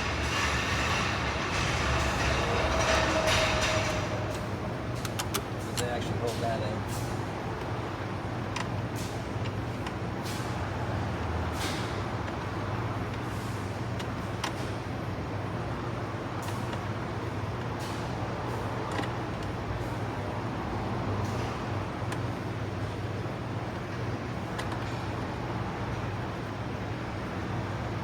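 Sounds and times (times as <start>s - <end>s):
steady low hum: 0.0s - 8.6s.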